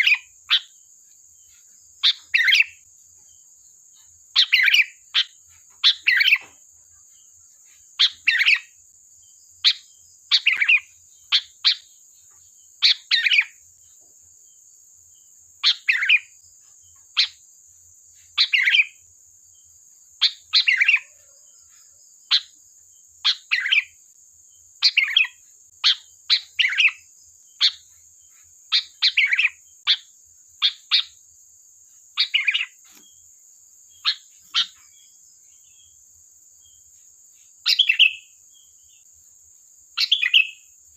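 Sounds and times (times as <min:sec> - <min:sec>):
bird chattering calls: 0:02.0 - 0:02.8, 0:04.4 - 0:06.5, 0:24.8 - 0:27.0, 0:28.7 - 0:31.2, 0:32.2 - 0:32.9, 0:40.0 - 0:40.6.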